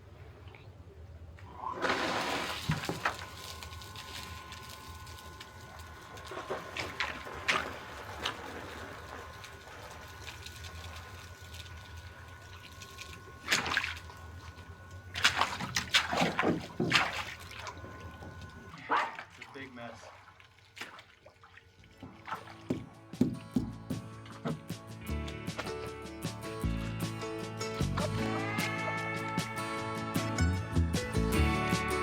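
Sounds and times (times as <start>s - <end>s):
pump whine: 0.0s - 21.0s, 21.8s - 32.0s
water gurgling and splashing: 1.4s - 23.0s.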